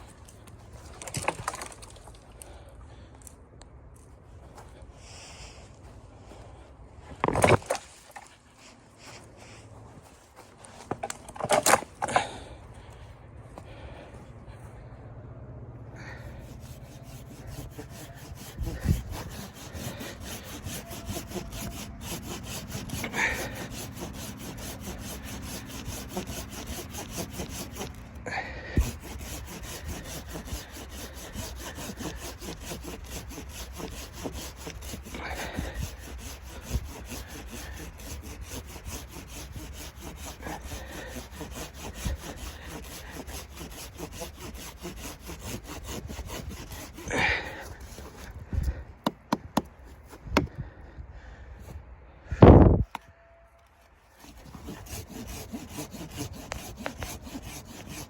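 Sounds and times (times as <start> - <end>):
hand saw cutting wood: 10.1 - 13.0, 16.0 - 50.6, 54.0 - 58.0.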